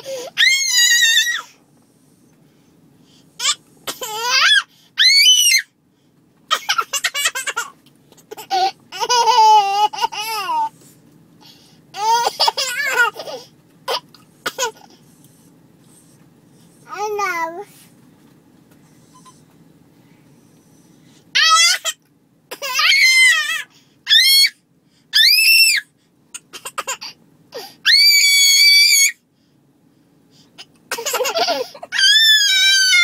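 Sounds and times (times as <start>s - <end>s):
baby laughing and squealing: 0.0s - 1.5s, 8.4s - 10.7s, 12.0s - 13.4s, 21.4s - 22.0s, 22.6s - 24.5s, 31.0s - 33.0s.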